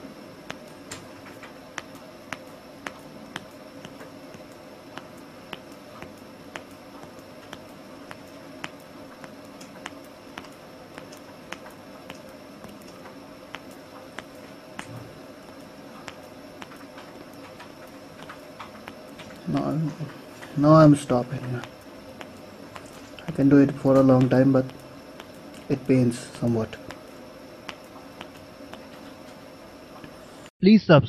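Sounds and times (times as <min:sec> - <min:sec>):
faint steady hum: 0:00.0 - 0:30.5.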